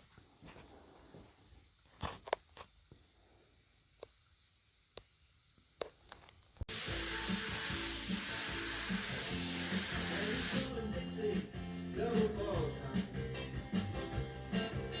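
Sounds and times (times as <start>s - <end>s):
spray paint hissing: 6.7s - 10.8s
background music: 6.7s - 15.0s.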